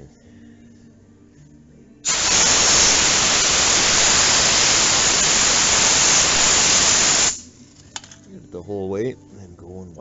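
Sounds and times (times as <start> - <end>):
compressed air blow gun hissing: 2.0 - 7.5.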